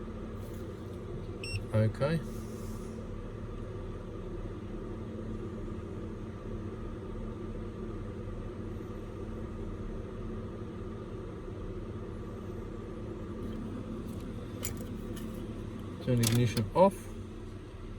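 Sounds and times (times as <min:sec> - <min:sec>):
mechanical drone with hum tones: 0:00.0 - 0:07.0, 0:12.2 - 0:17.9.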